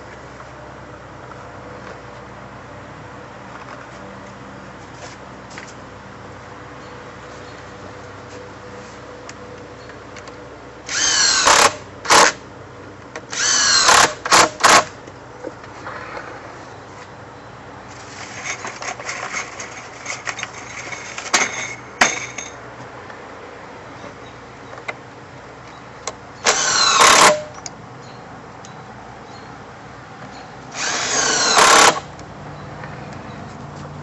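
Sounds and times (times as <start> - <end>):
power drill running: 10.9 - 12.4, 13.3 - 14.9, 26.4 - 27.6, 30.7 - 32.1
parts clicking and knocking: 18.2 - 23.2, 25.6 - 27.8, 30.2 - 33.6.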